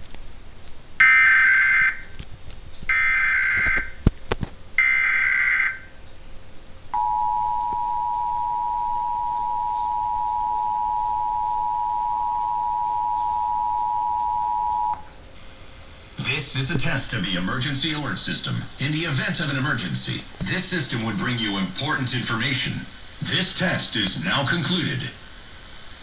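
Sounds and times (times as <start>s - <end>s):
shrill digital data tones: 6.9s - 15.1s
steady two-tone attention signal: 7.0s - 15.1s.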